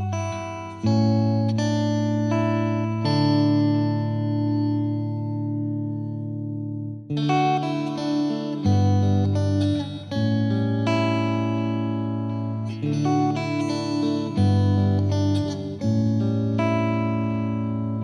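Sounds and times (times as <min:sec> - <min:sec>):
slow guitar music: 0:00.0 - 0:18.0.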